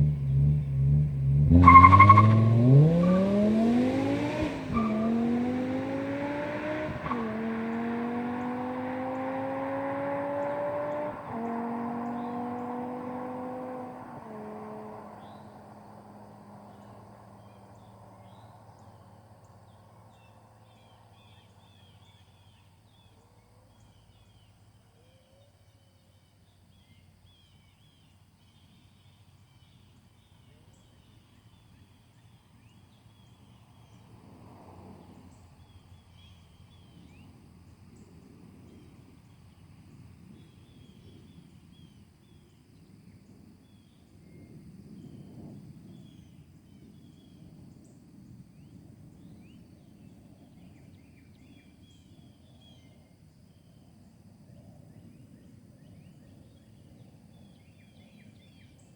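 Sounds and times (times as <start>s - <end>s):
car engine: 0.0s - 20.1s.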